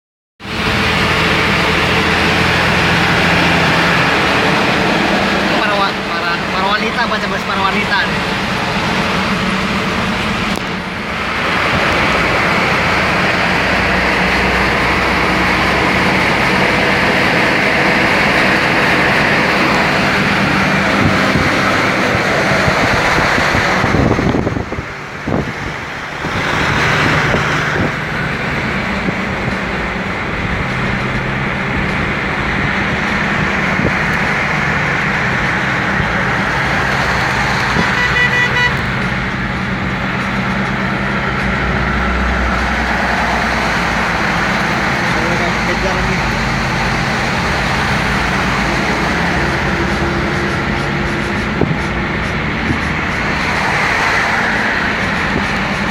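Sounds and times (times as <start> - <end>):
low engine drone: 0.4 - 55.9.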